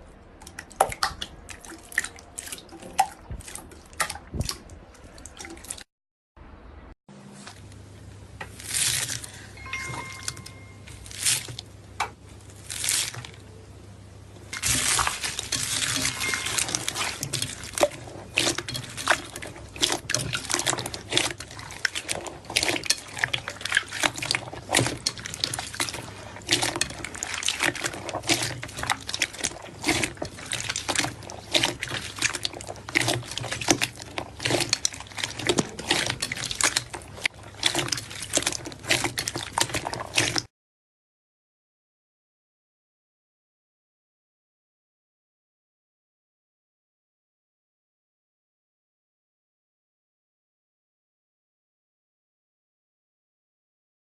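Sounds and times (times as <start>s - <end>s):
slime squelching: 0.2s - 5.9s, 8.4s - 13.6s, 14.4s - 40.5s.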